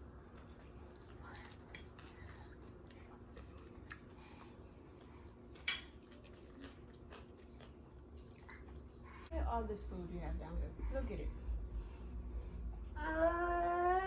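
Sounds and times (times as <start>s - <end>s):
faint steady hum: 0.0s - 14.0s
chewing: 0.2s - 9.3s.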